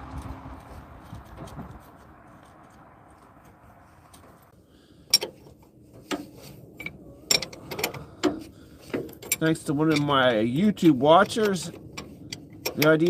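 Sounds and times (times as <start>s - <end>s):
metal parts clinking: 6.7s - 10.3s.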